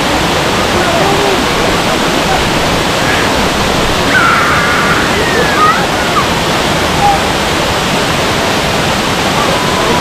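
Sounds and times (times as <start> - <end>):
waterfall roaring: 0.0 - 10.0.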